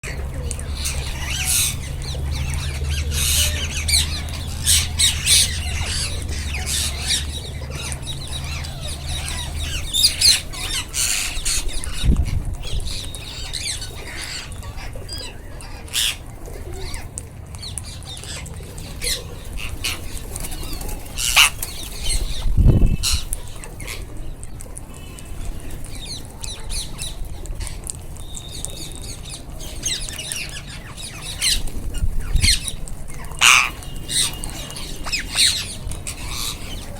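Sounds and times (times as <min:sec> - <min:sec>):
parakeets squawking: 0:00.0 - 0:17.0, 0:17.8 - 0:24.2, 0:25.0 - 0:36.9
wings flapping: 0:18.2 - 0:23.8.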